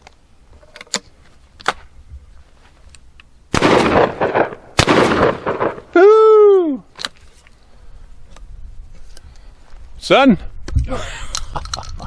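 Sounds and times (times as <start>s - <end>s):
shotgun shots: 3.5s - 6.0s.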